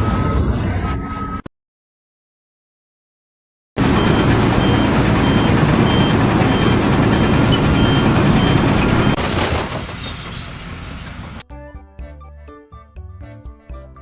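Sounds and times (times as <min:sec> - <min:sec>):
reversing alarm beeping: 0:03.8 - 0:09.2
heavy vehicle engine rumble: 0:03.8 - 0:11.4.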